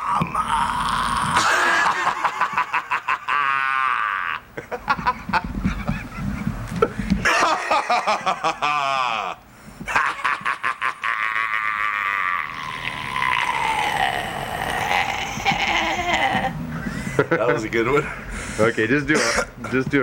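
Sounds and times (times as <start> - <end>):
man making comic vocal noise: 1.2 - 2.4.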